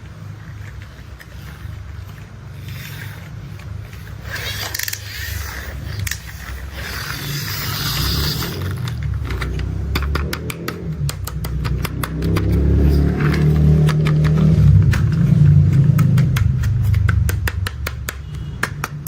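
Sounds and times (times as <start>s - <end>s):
toy wheels rolling and scraping: 0.0s - 19.0s
rapid tapping clicks: 13.3s - 19.0s.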